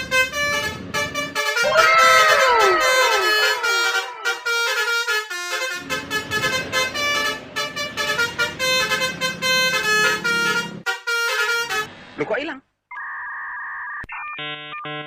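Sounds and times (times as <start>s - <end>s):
bus horn playing a tune: 0.0s - 11.9s.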